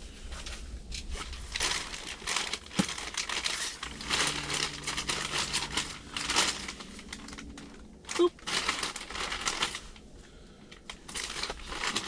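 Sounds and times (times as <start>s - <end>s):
plastic packages crinkling: 1.0s - 12.0s.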